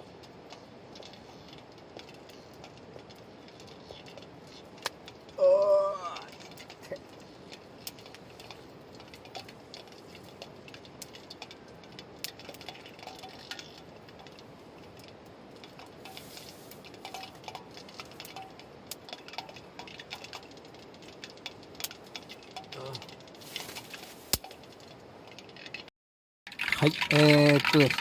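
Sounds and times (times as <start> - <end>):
utensils clicking and clinking: 15.7 - 24.6, 26.5 - 28.0.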